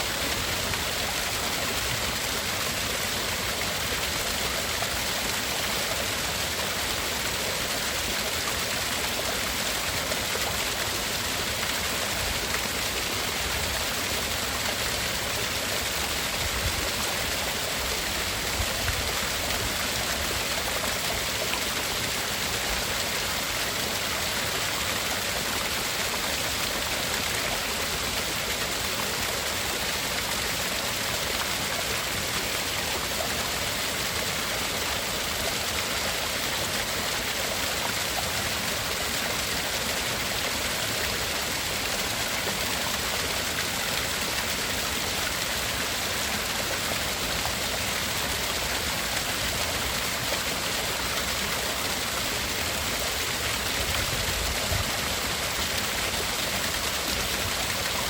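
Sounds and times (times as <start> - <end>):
steady hissy rushing noise: 0.0 - 8.0.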